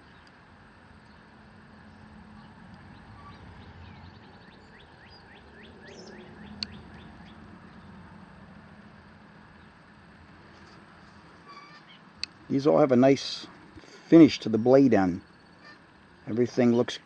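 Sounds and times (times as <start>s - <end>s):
faint steady hum: 0.0s - 17.0s
bird chirping: 1.0s - 8.0s.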